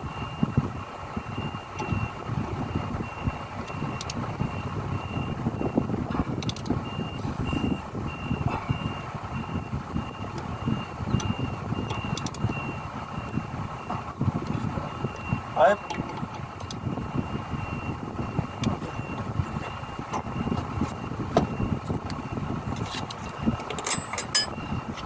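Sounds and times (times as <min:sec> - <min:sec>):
reversing alarm beeping: 0:00.0 - 0:24.9
sharp clicks: 0:12.0 - 0:12.6.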